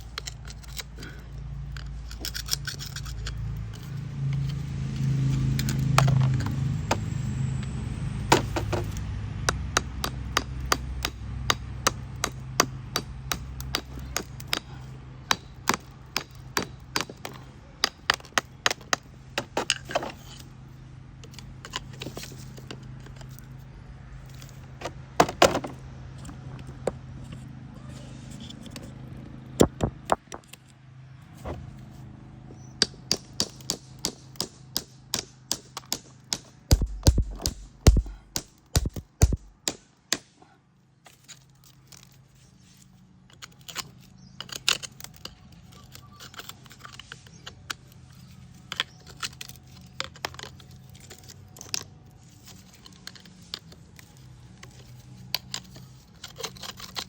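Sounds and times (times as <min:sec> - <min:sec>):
stones tapped and knocked: 0:08.3 - 0:14.7, 0:15.3 - 0:20.2, 0:29.6 - 0:30.6, 0:32.8 - 0:40.3.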